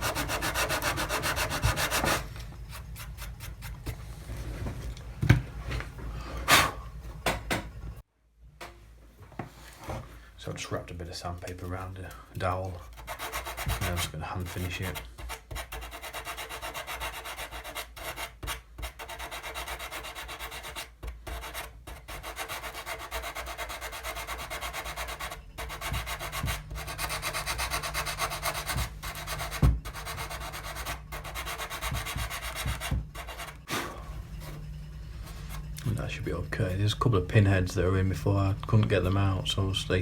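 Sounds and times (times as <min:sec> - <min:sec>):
sandpaper rubbing on wood: 0:00.0 - 0:03.8, 0:13.0 - 0:33.7.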